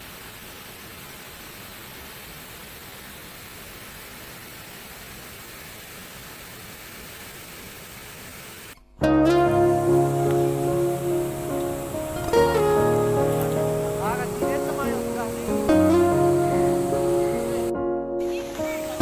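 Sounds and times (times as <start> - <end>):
waterfall rushing: 0.0 - 8.8, 9.4 - 19.0.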